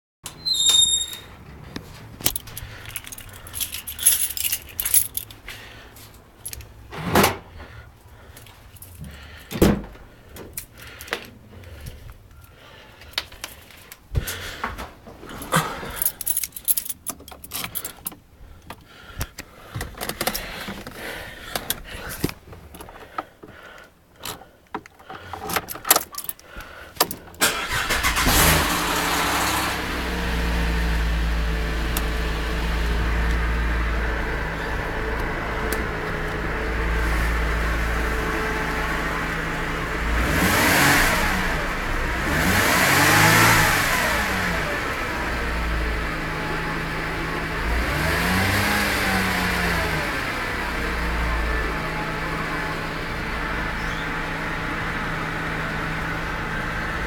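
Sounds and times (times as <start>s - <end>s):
car engine starting and idling: 1.4s - 57.0s
car engine revving: 27.4s - 57.0s.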